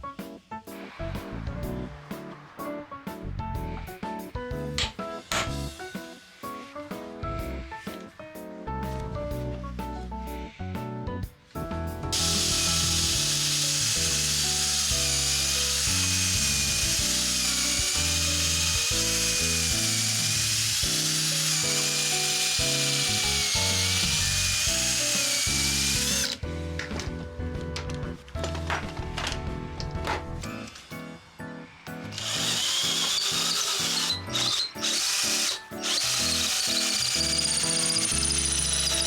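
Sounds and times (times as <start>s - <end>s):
small power tool whining: 12.2s - 26.4s, 32.0s - 39.0s.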